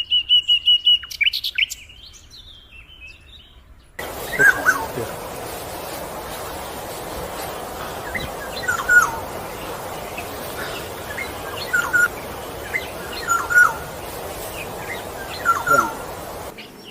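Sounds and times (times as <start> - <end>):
bird chirping: 0.1 - 16.9
background hiss: 4.0 - 16.9.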